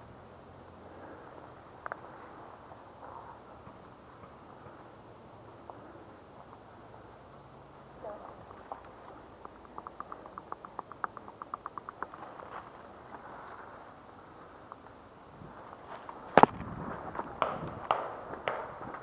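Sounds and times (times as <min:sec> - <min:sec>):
paintball markers firing: 0:17.4 - 0:19.0.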